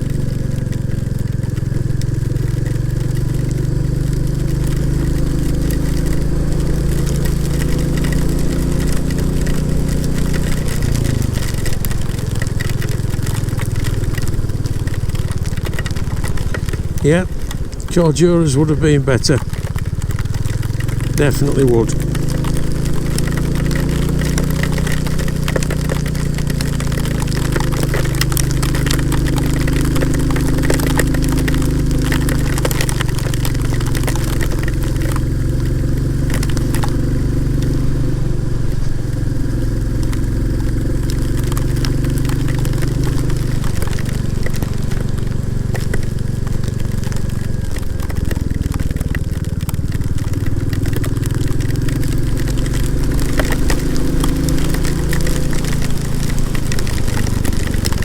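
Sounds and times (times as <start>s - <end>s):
motorcycle engine running: 0.0s - 58.0s
raindrops striking: 0.0s - 58.0s.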